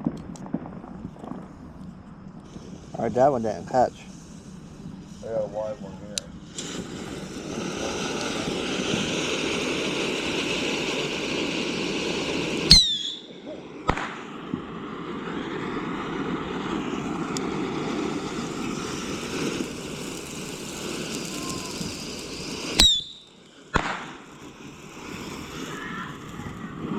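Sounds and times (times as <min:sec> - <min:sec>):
firework bang: 0:00.0 - 0:01.8, 0:06.5 - 0:26.9
firework crack: 0:00.0 - 0:26.9
fireworks hissing: 0:00.0 - 0:26.9.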